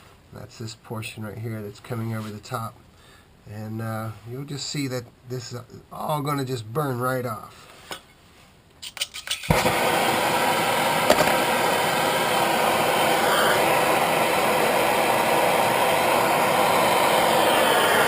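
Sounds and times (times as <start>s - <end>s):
gas torch flame rushing: 9.5s - 18.0s.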